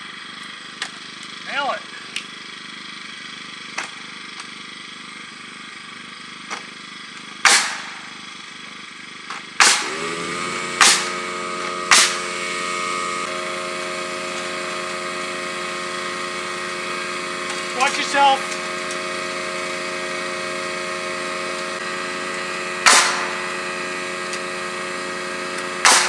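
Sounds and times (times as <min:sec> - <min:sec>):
air compressor motor running: 0:00.0 - 0:26.0
nail gun shots: 0:07.4 - 0:08.2, 0:09.6 - 0:10.1, 0:10.8 - 0:11.3, 0:11.9 - 0:12.4, 0:22.8 - 0:24.4, 0:25.6 - 0:26.0.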